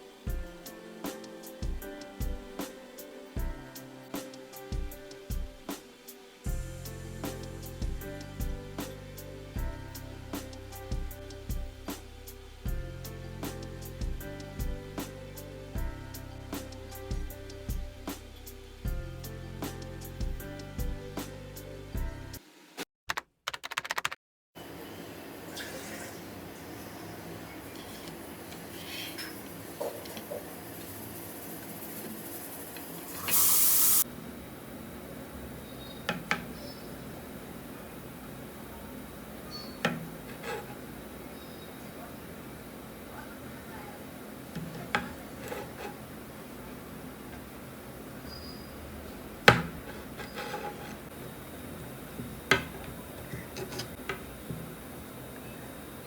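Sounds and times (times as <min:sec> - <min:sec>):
short spray hiss: 0:33.2 - 0:34.0
sharp knocks of hard objects: 0:49.5 - 0:50.2.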